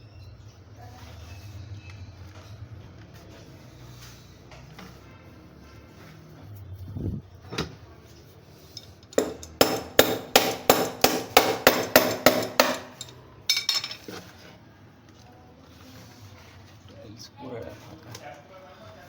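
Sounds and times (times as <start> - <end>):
hammer blows ringing: 9.2 - 13.1.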